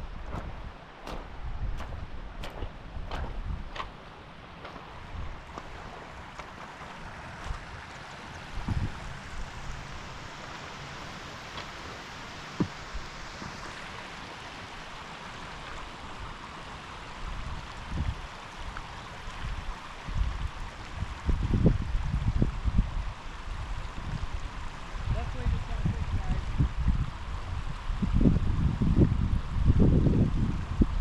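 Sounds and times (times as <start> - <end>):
wind buffeting microphone: 0.0 - 6.0, 8.5 - 10.4, 19.3 - 31.0
river water rushing: 0.0 - 21.0.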